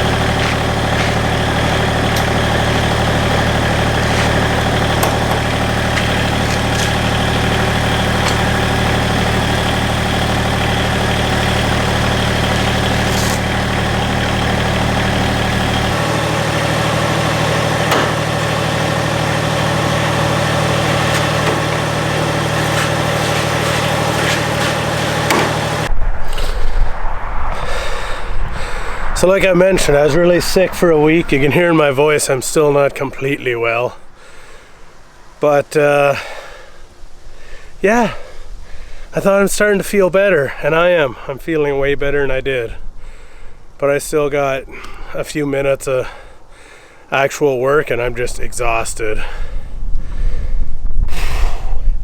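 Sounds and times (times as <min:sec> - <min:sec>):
engine idling: 0:00.0 - 0:26.6, 0:27.6 - 0:41.3
loud rough noise: 0:00.0 - 0:36.2.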